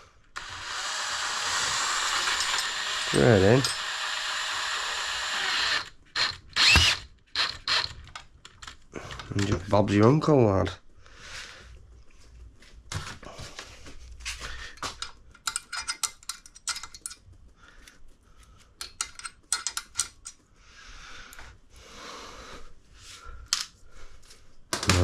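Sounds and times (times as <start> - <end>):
steel tool parts clinking: 2.3 - 3.9, 15.0 - 17.2, 18.8 - 20.4.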